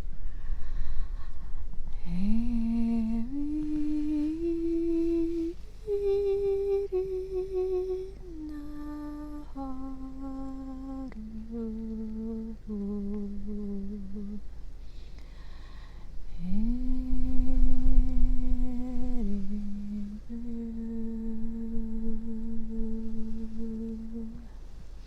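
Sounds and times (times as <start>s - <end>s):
person humming held notes: 1.0s - 14.5s, 16.3s - 24.6s.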